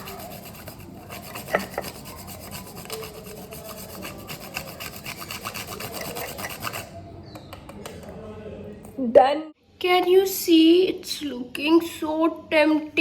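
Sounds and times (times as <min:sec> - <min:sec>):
chocolate rasping on a grater: 0:00.0 - 0:07.0.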